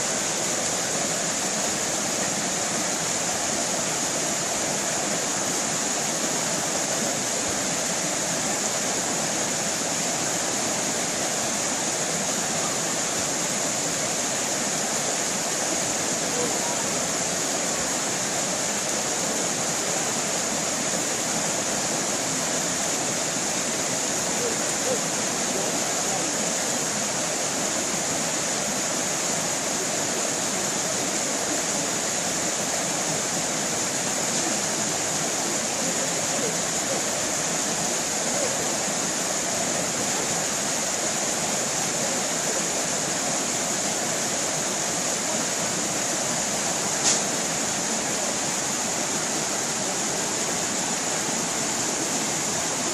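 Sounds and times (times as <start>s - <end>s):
stream water running: 0.0s - 52.9s
short click: 47.0s - 47.3s.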